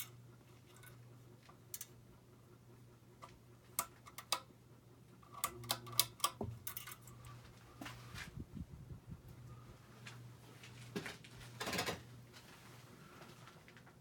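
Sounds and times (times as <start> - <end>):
ceiling fan motor hum: 0.0 - 14.0.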